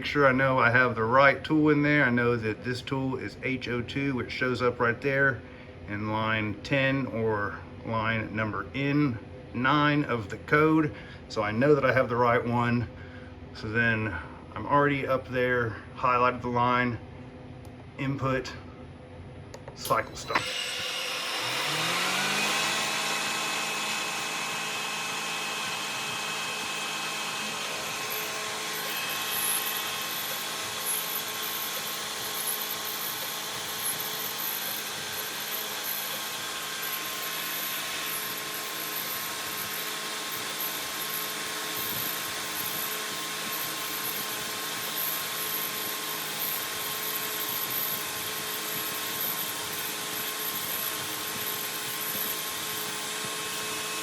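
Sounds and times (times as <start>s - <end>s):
mill spindle running: 19.5s - 54.0s
high thin whine: 19.8s - 42.9s.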